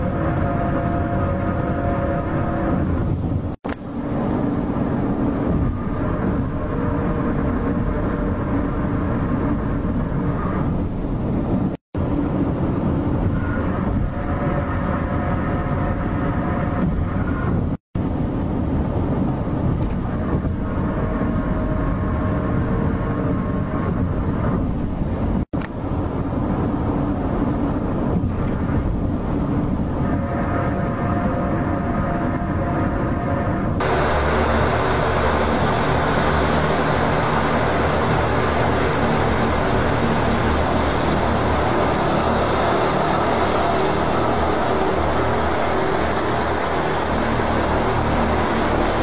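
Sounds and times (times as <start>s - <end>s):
low rumbling drone: 0.0s - 49.0s
faint wavering tones: 33.2s - 49.0s.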